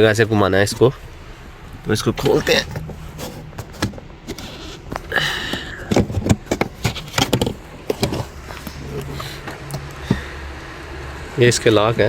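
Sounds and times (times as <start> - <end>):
hands working plastic cover loose: 2.2 - 10.5.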